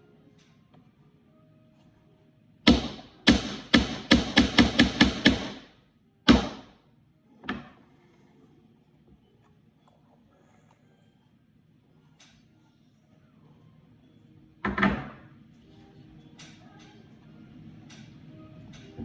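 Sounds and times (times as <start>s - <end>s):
hammer driving nails into wood: 2.7s - 5.7s, 6.3s - 6.7s.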